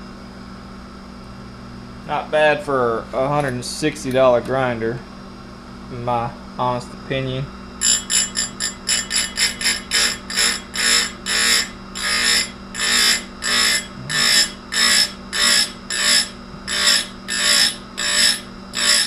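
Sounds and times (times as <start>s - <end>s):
grinder motor hum: 5.8s - 19.0s
grinding wheel on metal chain: 7.8s - 19.0s.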